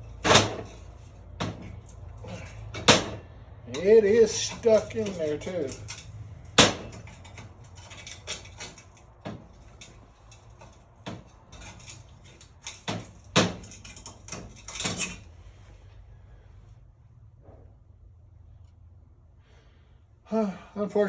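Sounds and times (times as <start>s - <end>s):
hand tools clanking on metal: 0.0s - 15.5s.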